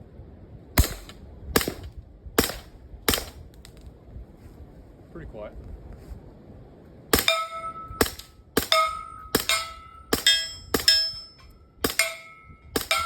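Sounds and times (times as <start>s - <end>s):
suppressed gunshots: 0.8s - 3.4s
metallic target clang: 7.1s - 13.0s.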